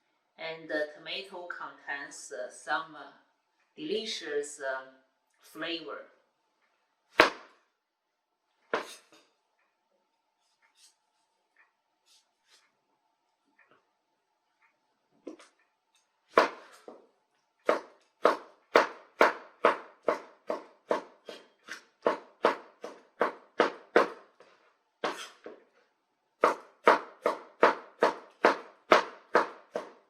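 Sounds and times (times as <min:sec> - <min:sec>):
knife chopping on cutting board: 0:07.2 - 0:07.5, 0:08.7 - 0:09.1, 0:16.3 - 0:17.0, 0:17.6 - 0:24.3, 0:25.0 - 0:25.6, 0:26.4 - 0:30.0.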